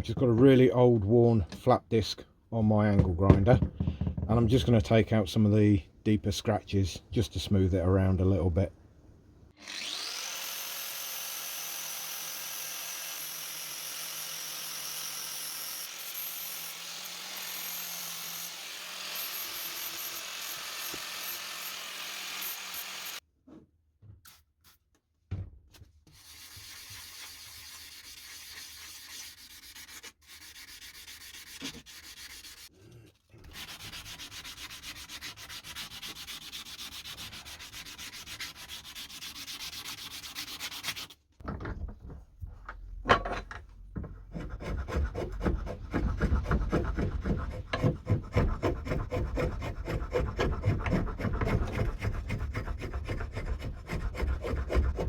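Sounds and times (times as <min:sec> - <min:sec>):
angle grinder grinding steel: 0:09.6 - 0:23.2.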